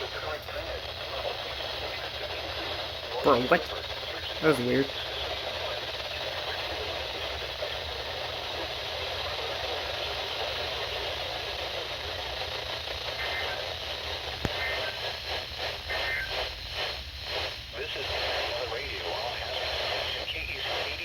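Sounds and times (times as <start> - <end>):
broadcast voice: 0.0 - 12.0, 17.7 - 21.0
radio static hiss: 0.0 - 21.0.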